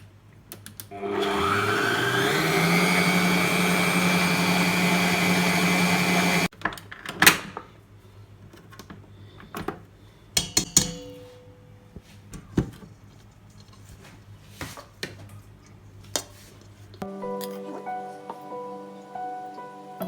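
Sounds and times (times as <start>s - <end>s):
electric mixer motor whipping: 0.9s - 6.5s.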